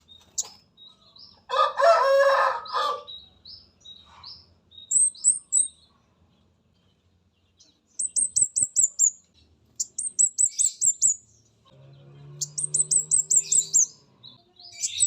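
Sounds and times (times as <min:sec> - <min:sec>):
rooster crowing: 0:01.5 - 0:03.2
bird whistled notes: 0:12.4 - 0:14.0.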